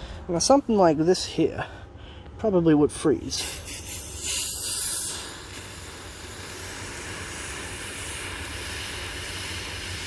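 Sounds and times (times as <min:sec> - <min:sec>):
aerosol spray hissing: 0:03.4 - 0:10.0.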